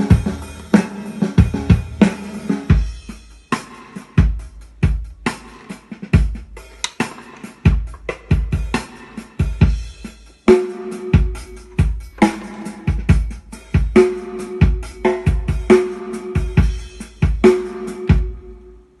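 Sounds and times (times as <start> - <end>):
keyboard drum beat: 0.0 - 18.7.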